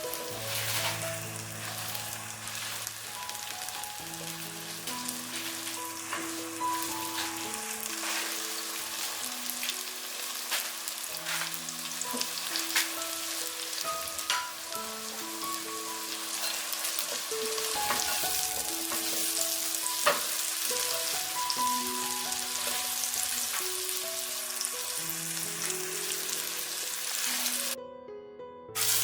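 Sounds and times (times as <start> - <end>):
tomatoes sizzling in a pan: 0.0 - 27.8, 28.8 - 29.0
soft background music: 0.0 - 29.0.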